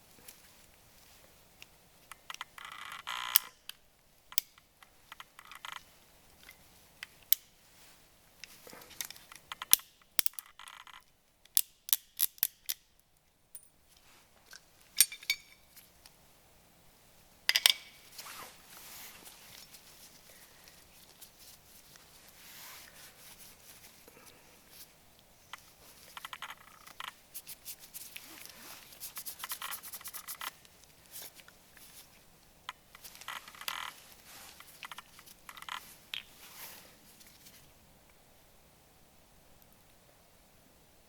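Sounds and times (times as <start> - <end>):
metal parts clicking and clinking: 9.0 - 12.8, 13.6 - 13.8, 15.0 - 15.7, 17.5 - 18.0.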